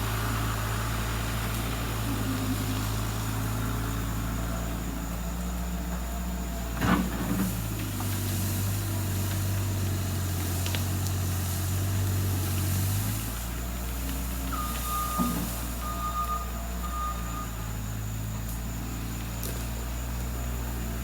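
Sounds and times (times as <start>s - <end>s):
skid-steer engine running: 0.0s - 21.0s
backup alarm beeping: 14.5s - 17.9s.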